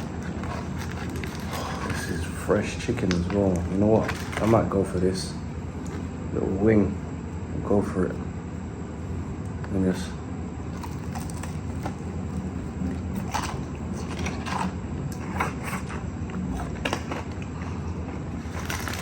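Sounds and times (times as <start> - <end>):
clicks and rustles of packaging: 0.0 - 2.2, 2.9 - 4.7
background hum: 0.0 - 19.0.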